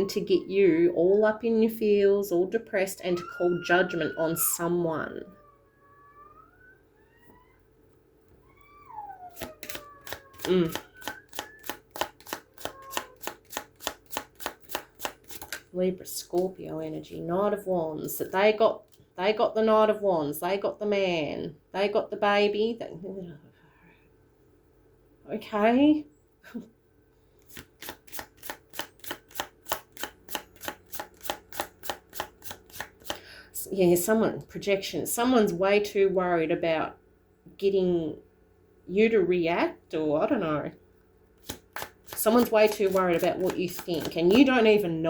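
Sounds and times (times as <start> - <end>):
cards being shuffled: 9.3 - 15.7, 27.4 - 33.2, 41.4 - 44.7.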